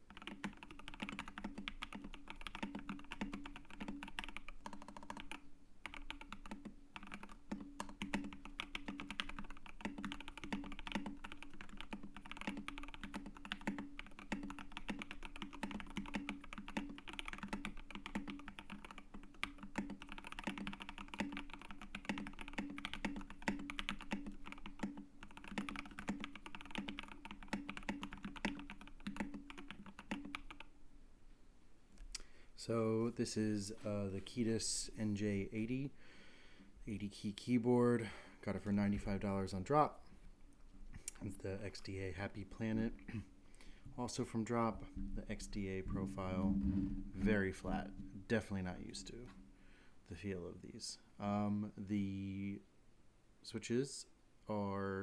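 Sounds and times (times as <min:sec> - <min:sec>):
fast mechanical keyboard typing: 0:00.0 - 0:30.7.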